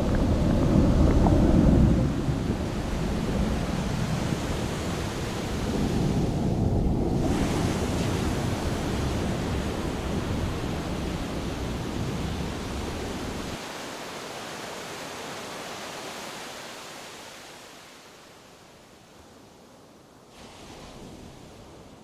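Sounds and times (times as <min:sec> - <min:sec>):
wind rumbling on microphone: 0:00.0 - 0:13.6
ocean surf: 0:00.0 - 0:19.1, 0:20.3 - 0:22.0.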